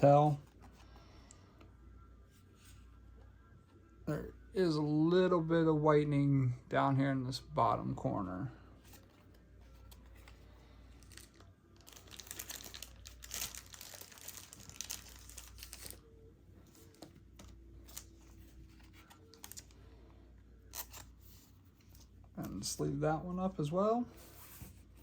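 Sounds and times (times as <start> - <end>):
plastic sleeve crinkling: 11.0 - 16.1.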